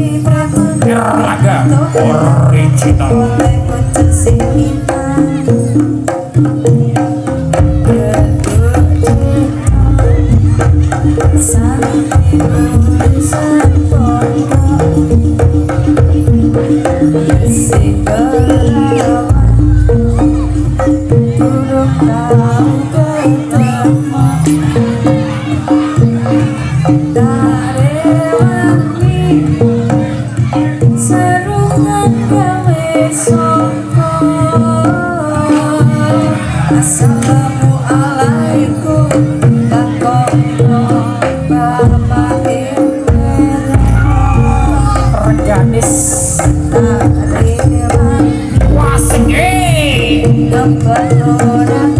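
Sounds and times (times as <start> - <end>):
drums and metallophones: 0.0 - 51.9
person singing: 0.0 - 51.9
tuned percussion melody: 0.0 - 51.9.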